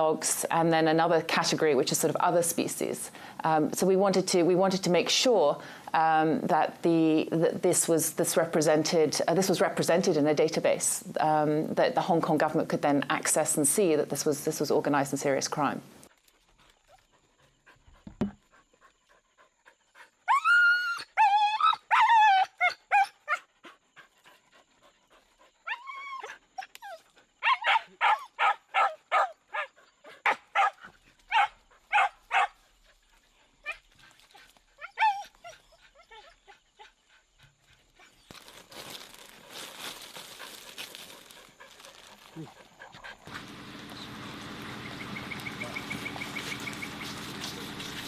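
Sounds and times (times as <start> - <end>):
animal calling: 42.2 - 48.0.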